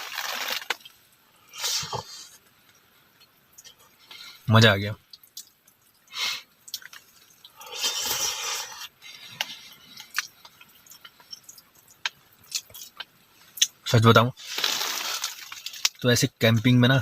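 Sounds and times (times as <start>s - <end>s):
soft chewing: 5.1s - 13.8s.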